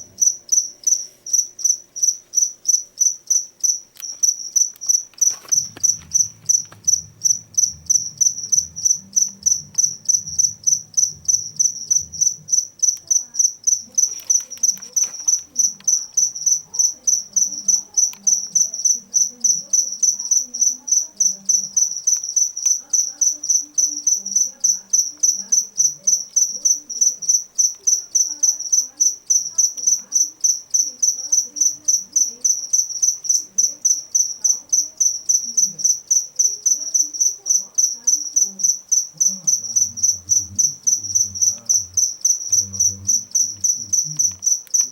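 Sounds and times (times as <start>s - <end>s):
cricket chirping: 0.0s - 44.9s.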